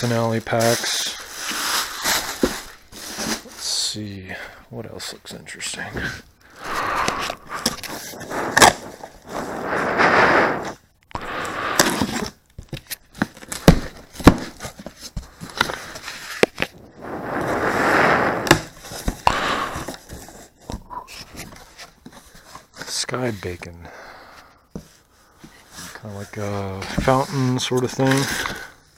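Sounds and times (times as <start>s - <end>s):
packaging rustling and crinkling: 0.4s - 3.7s.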